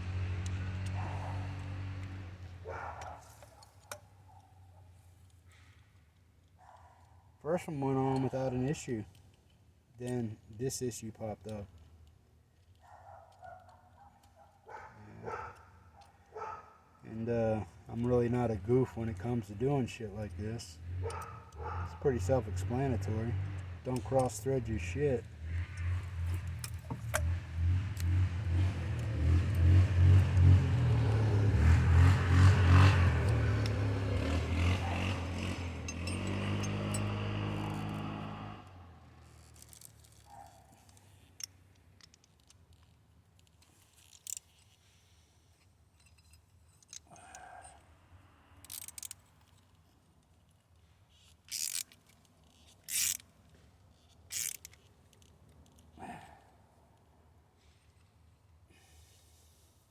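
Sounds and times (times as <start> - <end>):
vehicle engine running: 18.0 - 39.0
faint scrapes and clicks: 39.2 - 47.8, 48.5 - 58.2.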